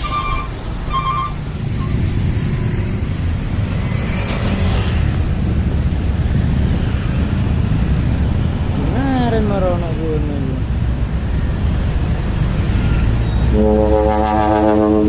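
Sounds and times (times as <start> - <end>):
diesel truck engine rumbling: 0.0 - 15.0.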